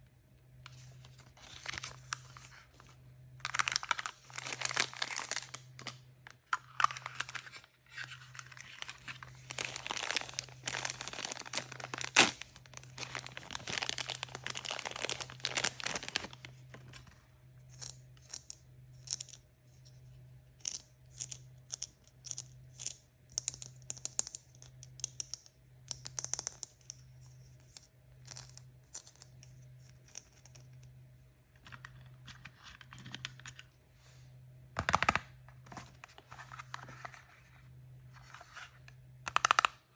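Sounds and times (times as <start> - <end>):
packaging tearing and crinkling: 3.4 - 6.0, 6.7 - 16.5.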